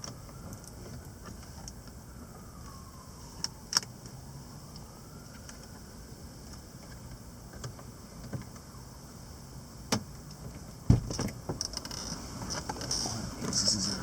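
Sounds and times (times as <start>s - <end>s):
loud thud: 10.9s - 11.2s.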